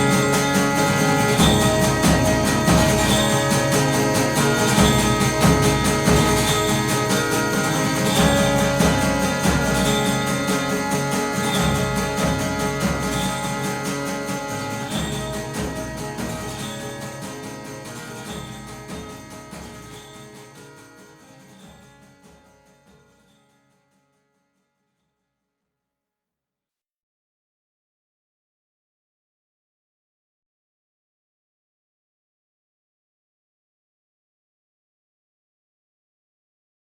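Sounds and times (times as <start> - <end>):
instrumental rock music: 0.0 - 20.3.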